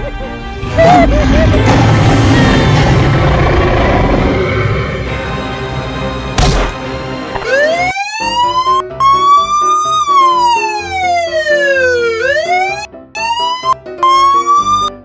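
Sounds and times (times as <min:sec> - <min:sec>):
background music: 0:00.0 - 0:15.0
cartoon police siren wailing: 0:07.4 - 0:15.0.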